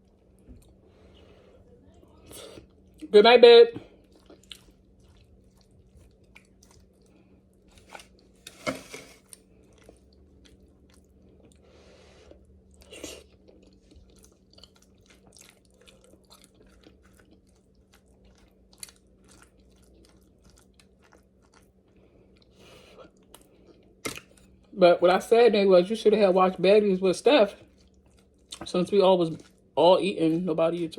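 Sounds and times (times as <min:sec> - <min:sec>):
low steady hum: 0:00.0 - 0:30.9
chewing: 0:03.9 - 0:08.6, 0:09.2 - 0:24.7, 0:27.5 - 0:30.4.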